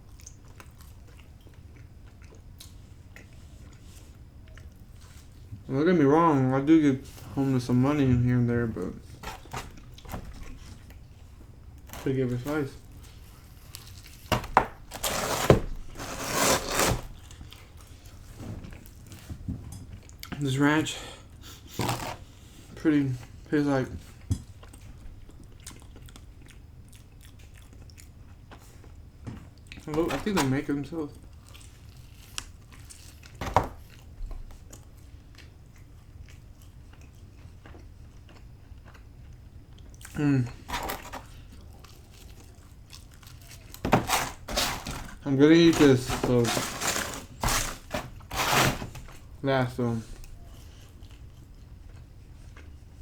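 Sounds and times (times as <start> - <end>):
soft chewing: 0.0 - 5.7, 6.9 - 14.9, 17.0 - 30.0, 31.0 - 53.0
packaging scraping and rustling: 9.0 - 10.8, 12.0 - 17.4, 21.8 - 22.3, 29.9 - 30.7, 40.6 - 42.5, 43.2 - 49.4.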